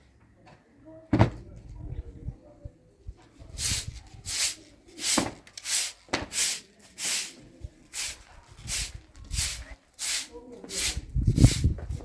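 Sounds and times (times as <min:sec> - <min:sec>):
hand tool scraping strokes: 0:03.6 - 0:11.7.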